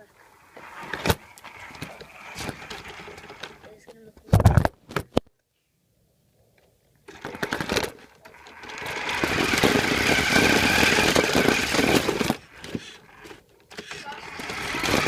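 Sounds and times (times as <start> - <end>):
toy car motor whirring: 0.0 - 3.8, 7.1 - 15.0.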